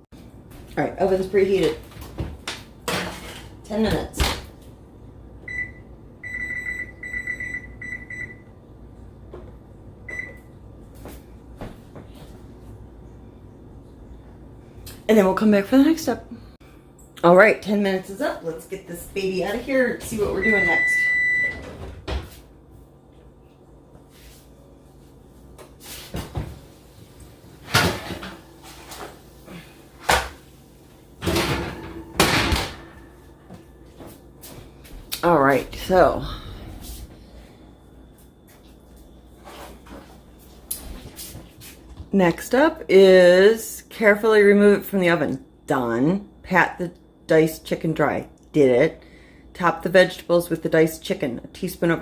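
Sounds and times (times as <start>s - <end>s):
short high appliance beeps: 5.5s - 8.5s, 10.1s - 10.5s, 20.4s - 21.7s
oven door opening and shutting: 31.2s - 33.2s.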